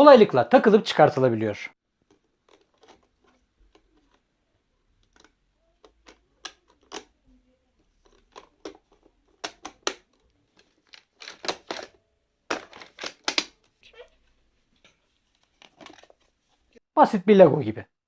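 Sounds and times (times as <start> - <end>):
plastic parts clicking and snapping: 2.0 - 4.3, 4.9 - 7.2, 7.8 - 13.8, 14.8 - 16.3.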